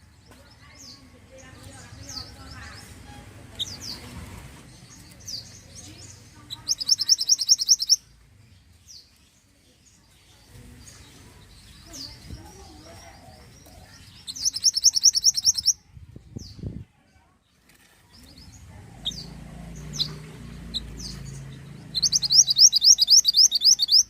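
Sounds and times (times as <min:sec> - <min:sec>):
high bird chirps: 0:04.8 - 0:08.2, 0:13.4 - 0:15.8, 0:18.2 - 0:24.0
fast high bird trill: 0:06.5 - 0:08.0, 0:14.3 - 0:15.8, 0:21.9 - 0:24.0.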